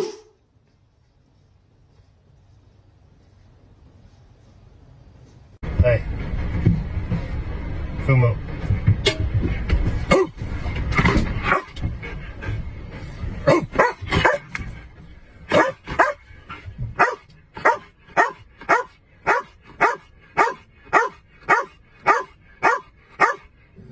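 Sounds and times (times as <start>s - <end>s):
low rumbling noise: 0.3s - 23.9s
dog barking: 11.4s - 11.8s, 13.4s - 14.5s, 15.5s - 16.2s, 17.0s - 23.5s.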